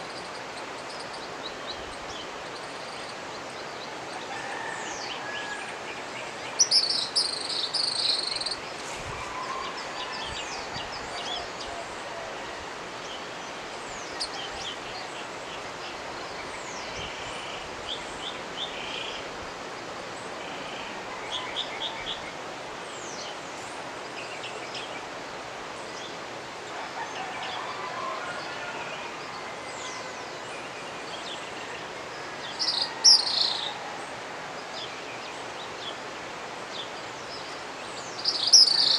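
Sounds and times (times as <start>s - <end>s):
mountain river rushing: 0.0s - 38.9s
birds calling: 38.1s - 38.9s.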